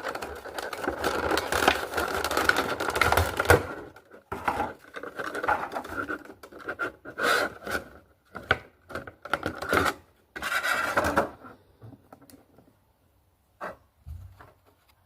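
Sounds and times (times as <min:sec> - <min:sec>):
packaging rustling: 0:00.0 - 0:06.8.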